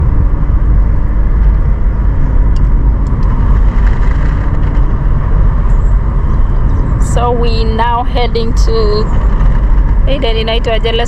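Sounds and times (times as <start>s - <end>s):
car engine and road rumble: 0.0s - 11.0s.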